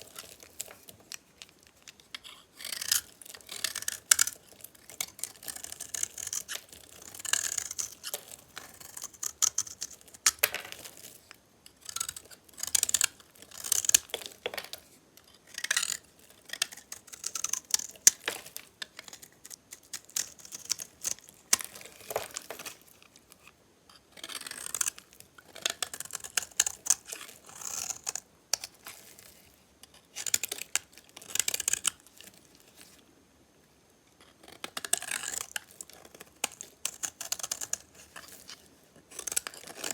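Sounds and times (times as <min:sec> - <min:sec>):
knife cutting soap bars: 0:00.0 - 0:11.1, 0:34.6 - 0:39.9.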